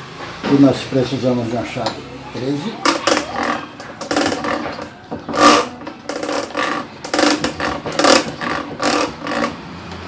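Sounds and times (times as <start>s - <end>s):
wrench undoing bolt: 2.8s - 9.6s.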